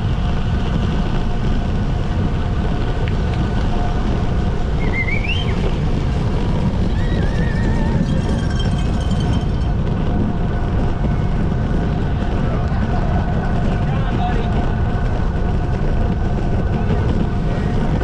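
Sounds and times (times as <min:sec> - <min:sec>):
wind buffeting microphone: 0:00.0 - 0:18.0
faint wavering high tones: 0:07.3 - 0:10.6.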